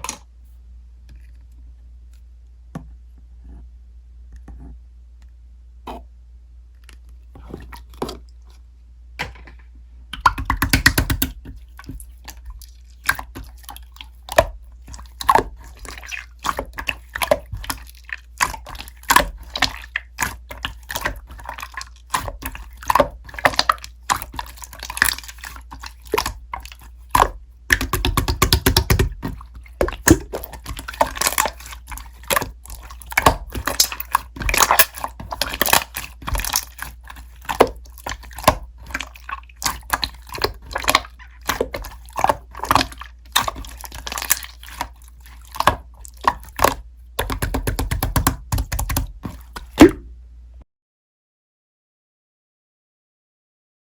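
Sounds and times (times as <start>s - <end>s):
rapid crackling of slime: 10.2s - 49.9s
slime squeezed by hand: 10.2s - 50.0s.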